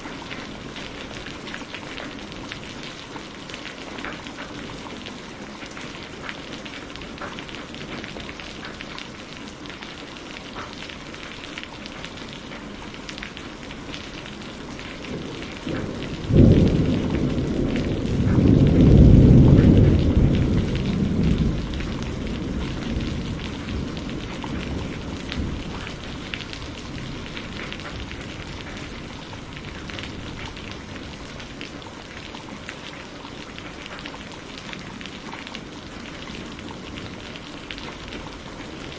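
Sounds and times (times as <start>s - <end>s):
steady rain: 0.0s - 38.9s
thunderclap and rumble: 14.0s - 38.9s.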